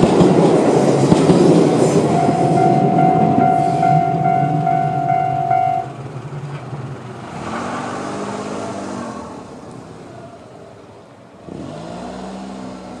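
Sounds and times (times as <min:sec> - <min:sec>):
vehicles driving past: 0:00.0 - 0:13.0
level crossing warning bell: 0:02.1 - 0:06.1.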